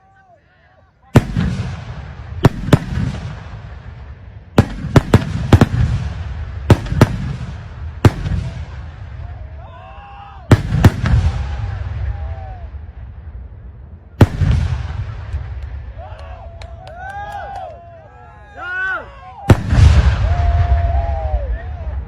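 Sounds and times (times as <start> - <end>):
firecrackers banging: 1.2 - 9.4
rumbling echo: 1.2 - 9.9, 10.5 - 16.5.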